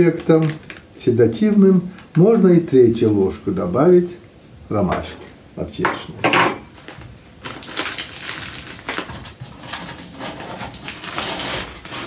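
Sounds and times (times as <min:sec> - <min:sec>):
dried flowers rustling: 0:06.8 - 0:12.0.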